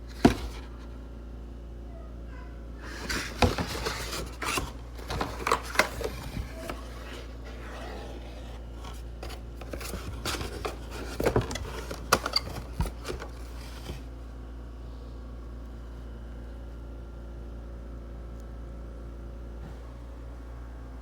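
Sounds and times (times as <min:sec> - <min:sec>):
objects being moved clicking and scraping: 0:02.8 - 0:14.0.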